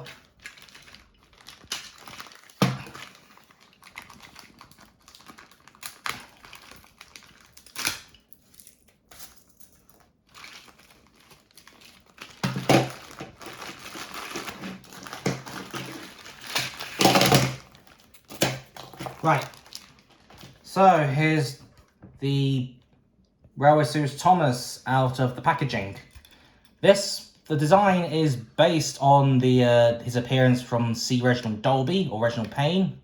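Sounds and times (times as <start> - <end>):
toy packaging rustling: 0.0 - 21.1.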